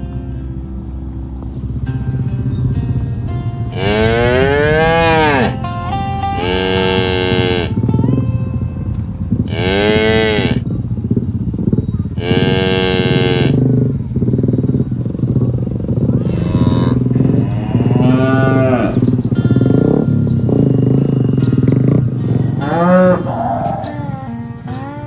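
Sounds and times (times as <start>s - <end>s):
steady low rumble: 0.0s - 25.0s
cows mooing: 3.7s - 5.7s, 6.3s - 7.8s, 9.4s - 10.7s, 12.1s - 14.0s, 14.9s - 25.0s.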